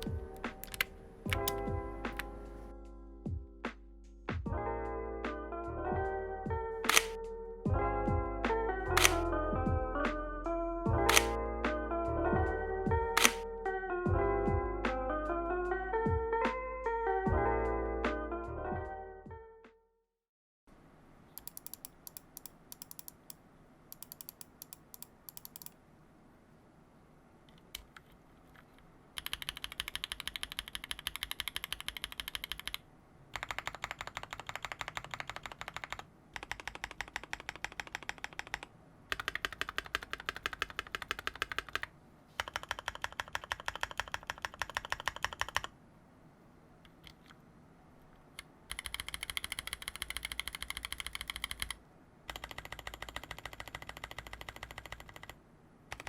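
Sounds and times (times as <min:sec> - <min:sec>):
mechanical keyboard typing: 0:00.0 - 0:02.3, 0:06.8 - 0:07.2, 0:08.9 - 0:09.3, 0:11.1 - 0:11.4, 0:13.1 - 0:13.4, 0:21.4 - 0:25.8, 0:27.5 - 0:45.7, 0:46.9 - 0:47.4, 0:48.3 - 0:56.0.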